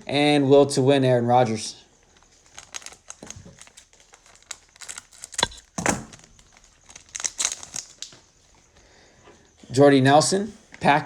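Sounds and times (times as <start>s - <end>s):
plastic wrapper crinkling: 2.0s - 8.8s
plastic wrapper tearing: 2.3s - 8.4s.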